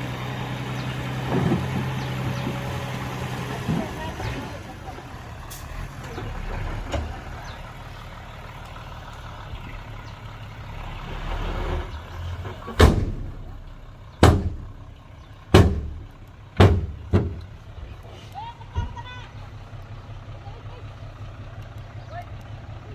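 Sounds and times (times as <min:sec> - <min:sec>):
diesel engine running low: 0:00.0 - 0:22.9
loud heavy bangs: 0:12.7 - 0:13.6, 0:14.2 - 0:14.8, 0:15.5 - 0:17.4.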